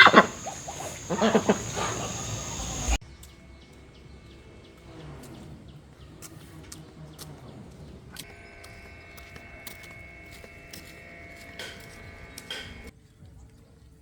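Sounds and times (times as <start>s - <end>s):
animal call: 0.0s - 3.0s.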